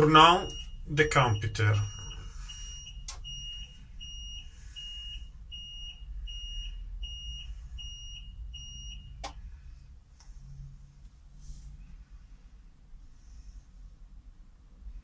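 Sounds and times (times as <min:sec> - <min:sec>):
short high warning beeps: 0:00.0 - 0:09.2
low steady hum: 0:00.0 - 0:15.0.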